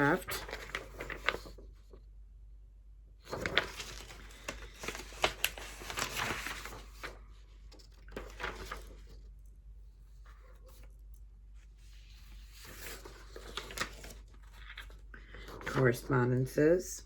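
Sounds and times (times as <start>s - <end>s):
paper rustling and crinkling: 0.0s - 2.0s, 3.2s - 9.4s, 11.6s - 16.1s.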